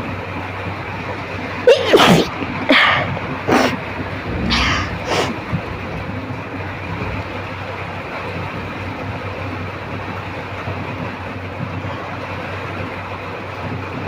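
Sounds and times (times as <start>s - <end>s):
low hum: 4.0s - 10.1s.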